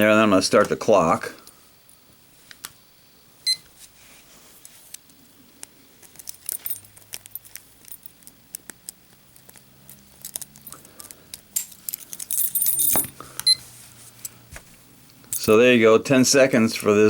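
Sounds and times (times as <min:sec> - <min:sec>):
lock pick clicking and scraping: 0:04.9 - 0:13.6
padlock rattling open: 0:06.0 - 0:13.2.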